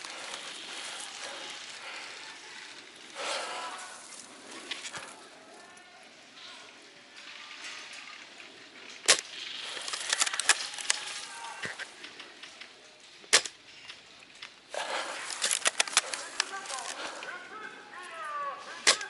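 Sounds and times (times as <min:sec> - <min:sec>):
light clicks and rustling: 0:07.4 - 0:17.4.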